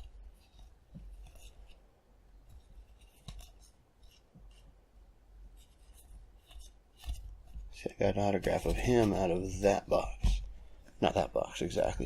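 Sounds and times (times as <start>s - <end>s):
trading cards rustling and sliding: 0.0s - 1.8s, 2.4s - 4.7s, 5.6s - 10.2s.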